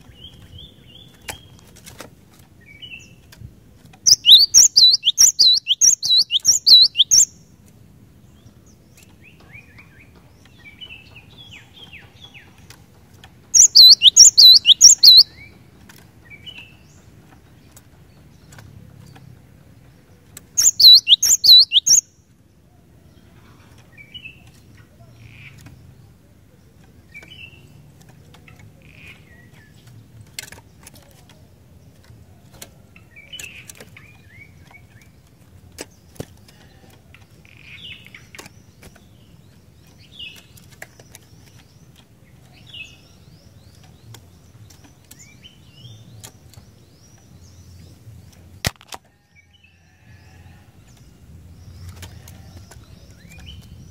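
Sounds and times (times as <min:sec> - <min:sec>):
bird whistling rapid notes: 0:04.1 - 0:07.3, 0:13.6 - 0:15.2, 0:20.6 - 0:22.0
faint bird chirps: 0:04.1 - 0:07.3, 0:13.6 - 0:15.4, 0:20.6 - 0:22.1.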